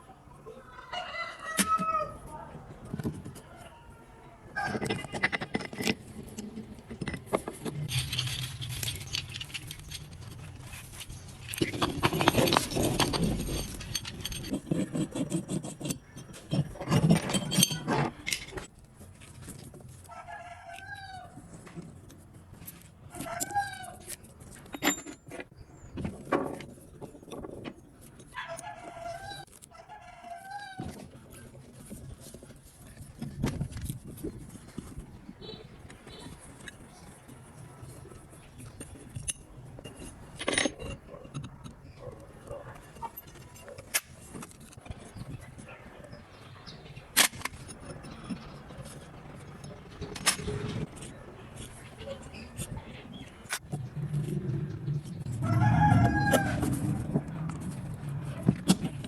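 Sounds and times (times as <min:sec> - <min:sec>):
rooster crowing: 0:00.5 - 0:02.5, 0:03.4 - 0:04.9, 0:20.1 - 0:21.4, 0:55.3 - 0:57.3
clattering metal workshop noise: 0:04.5 - 0:19.9, 0:21.0 - 0:29.7, 0:30.7 - 0:59.0
chickens clucking: 0:40.9 - 0:43.9, 0:44.8 - 0:59.0.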